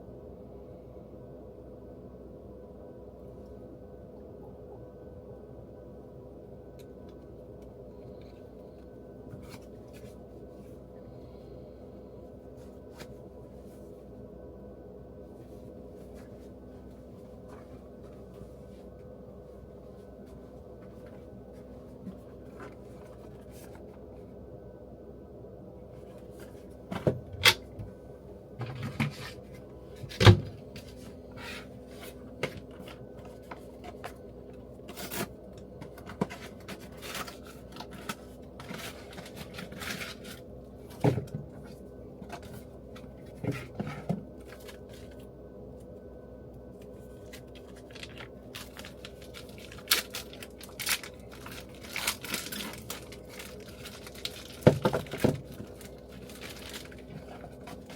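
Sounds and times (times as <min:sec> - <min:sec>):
steady low hum: 0:00.0 - 0:57.9
objects knocking and clattering: 0:54.6 - 0:55.6.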